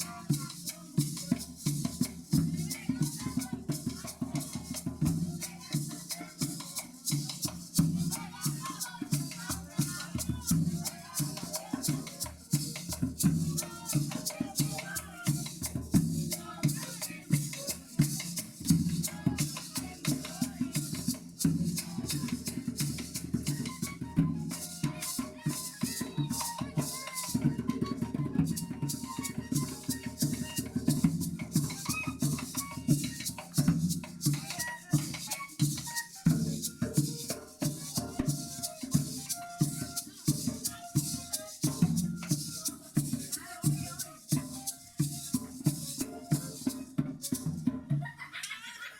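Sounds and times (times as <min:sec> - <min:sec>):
hand drum beats: 0:00.0 - 0:48.2
maraca shaking: 0:00.0 - 0:48.9
flute melody: 0:23.1 - 0:47.7.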